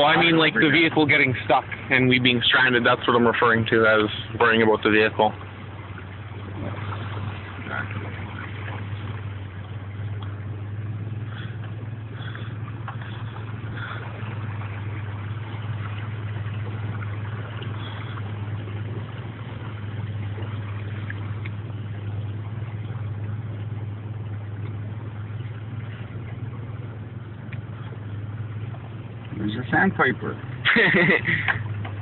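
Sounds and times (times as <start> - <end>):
vehicle engine droning: 0.0 - 32.0
tyres hissing through water: 11.0 - 20.2.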